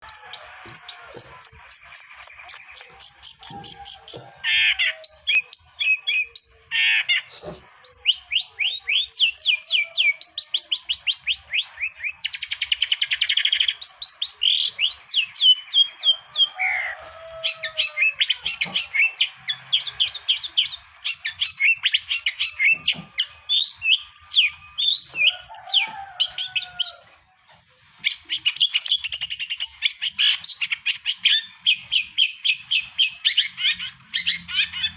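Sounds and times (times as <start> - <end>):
bird singing chattering trills: 0.0 - 16.7, 17.9 - 25.6, 28.1 - 34.9.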